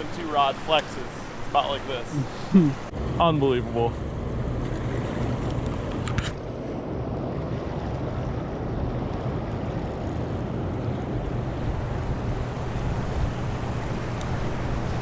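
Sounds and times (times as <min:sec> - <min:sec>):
fast river water: 0:00.0 - 0:03.1, 0:11.2 - 0:15.0
wind: 0:00.0 - 0:15.0
low steady hum: 0:11.2 - 0:15.0.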